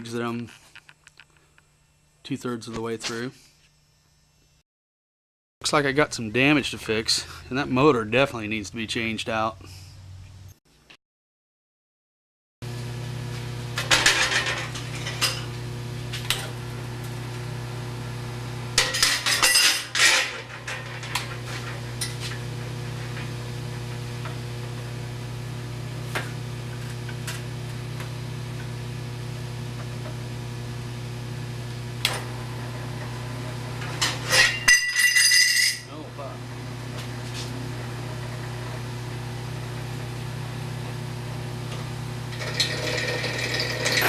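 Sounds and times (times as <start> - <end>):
steady electrical hum: 13.4 - 44.0.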